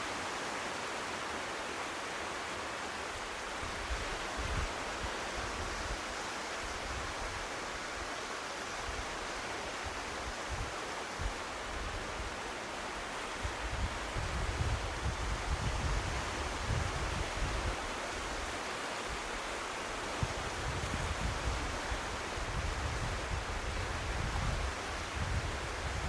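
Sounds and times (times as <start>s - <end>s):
wind buffeting microphone: 13.4s - 18.4s, 20.2s - 26.0s.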